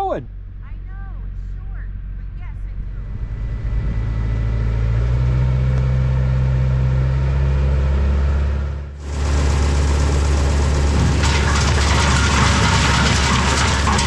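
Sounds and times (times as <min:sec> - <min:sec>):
engine idling: 0:00.0 - 0:14.0
wood chipper clattering: 0:09.0 - 0:14.0.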